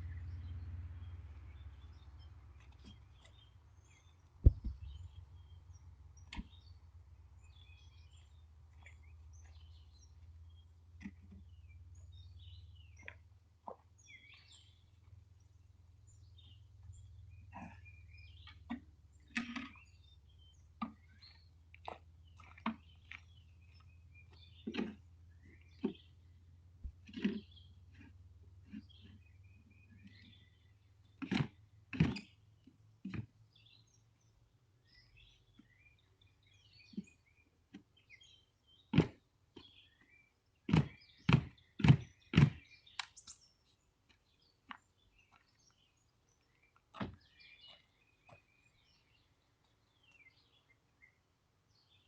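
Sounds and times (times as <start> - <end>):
low steady hum: 0.0 - 20.8
knocks and scrapes: 4.4 - 5.2, 26.8 - 29.3.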